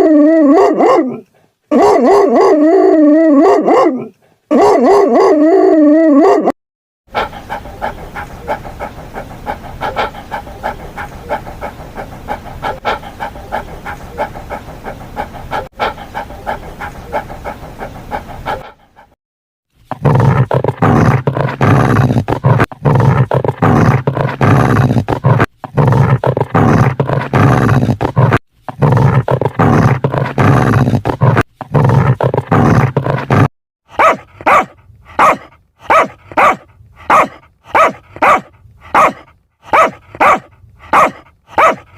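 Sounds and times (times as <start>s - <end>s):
dog barking: 0.5s - 2.6s, 3.4s - 5.4s, 6.2s - 6.5s, 33.9s - 41.9s
deep rough dog vocalising: 7.1s - 19.2s, 19.9s - 41.9s
fast repeated dog calls: 7.1s - 19.2s, 33.9s - 41.9s.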